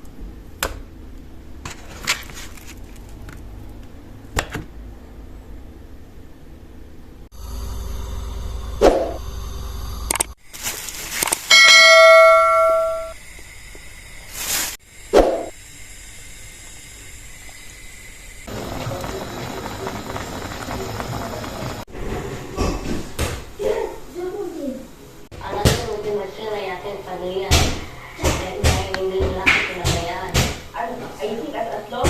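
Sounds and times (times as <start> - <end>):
bell-like metallic ring: 11.5 - 13.2.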